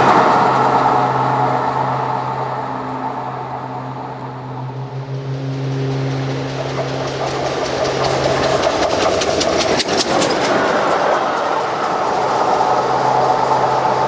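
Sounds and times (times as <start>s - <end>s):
steady low hum: 0.0s - 9.9s
train rushing rumble: 0.0s - 14.0s
train wheels clicking over rail joints: 5.4s - 14.0s.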